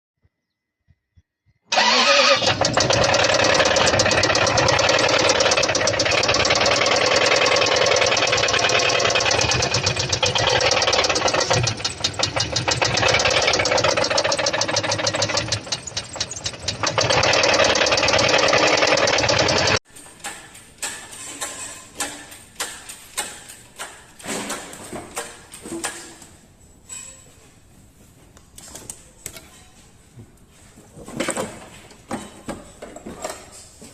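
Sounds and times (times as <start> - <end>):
car engine knocking: 1.8 - 19.8
sharp clicks and knocks: 2.4 - 26.0.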